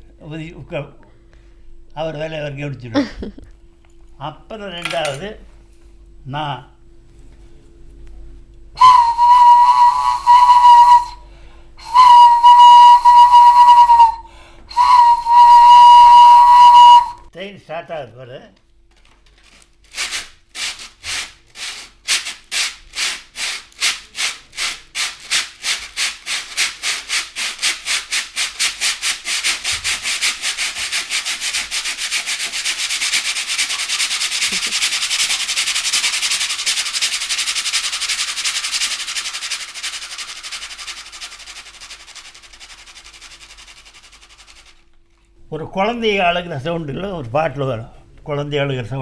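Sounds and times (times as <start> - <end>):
rhythmic rubbing strokes: 19.9 - 44.8.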